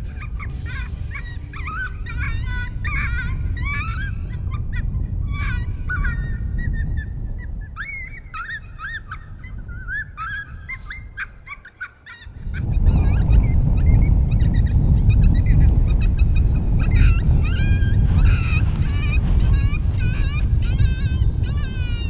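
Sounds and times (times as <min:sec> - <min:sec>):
loud low rumble: 0:00.0 - 0:07.8, 0:12.4 - 0:22.0
coyotes yipping and howling: 0:00.0 - 0:22.0.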